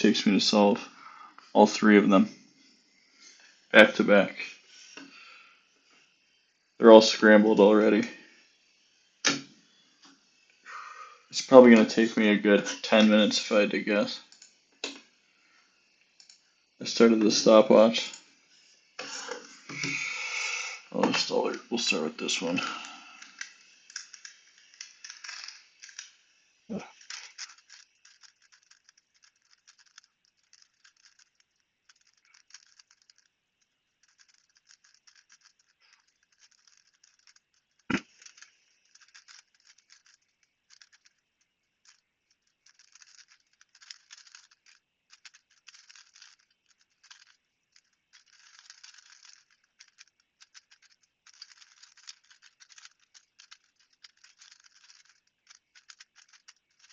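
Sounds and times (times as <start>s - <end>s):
rubik's cube clicking: 23.4s - 56.9s.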